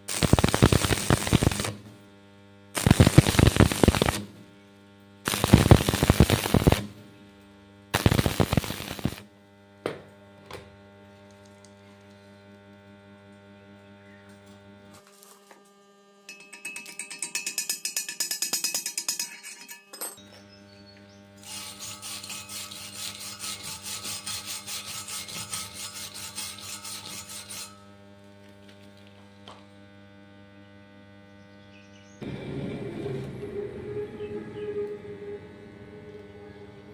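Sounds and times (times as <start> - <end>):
welding arc crackling and sputtering: 0.0 - 9.7, 10.9 - 15.6
steady electrical hum: 0.0 - 16.4, 20.2 - 36.9.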